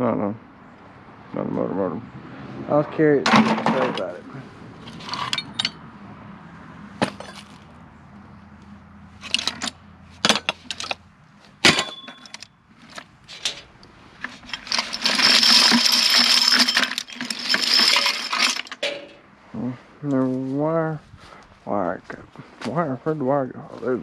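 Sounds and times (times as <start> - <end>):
metal rattling clatter: 3.3 - 4.1, 4.8 - 5.8, 7.0 - 7.6, 9.2 - 11.0, 11.6 - 19.2
scrap metal clinking: 4.8 - 5.8, 7.0 - 7.6, 9.2 - 11.0, 11.6 - 19.2.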